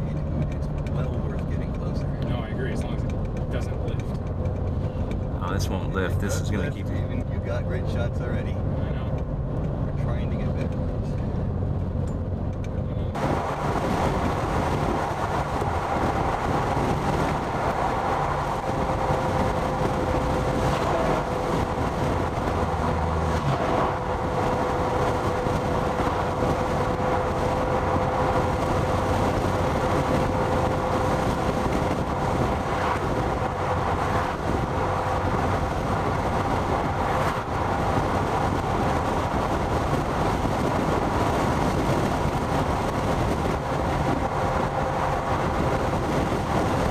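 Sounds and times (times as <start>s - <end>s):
road and engine rumble: 0.0s - 46.9s.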